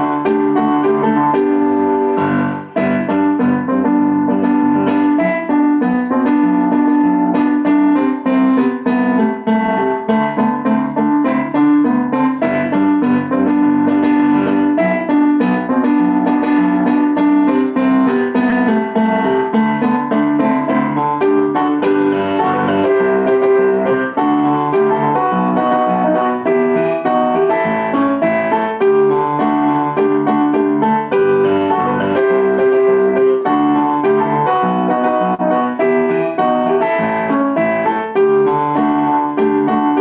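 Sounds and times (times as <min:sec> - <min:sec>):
piano music: 0:00.0 - 0:40.0.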